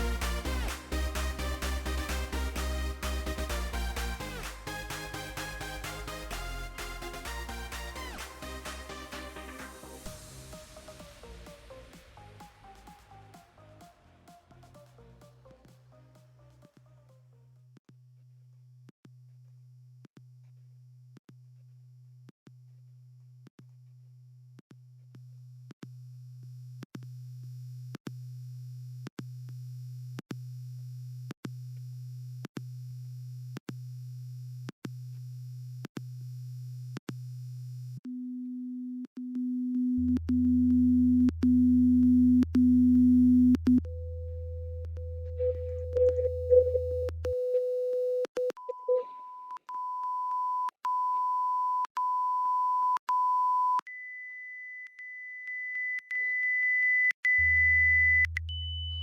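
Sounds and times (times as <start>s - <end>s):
deep hum: 0.0s - 11.5s, 40.0s - 47.3s
short repeated beeps: 55.7s - 59.0s.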